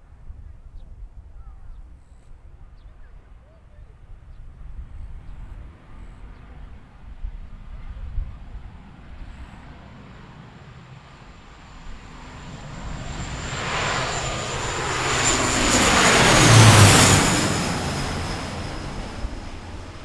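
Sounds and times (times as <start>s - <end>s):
airliner passing with engine whine: 3.2s - 20.0s.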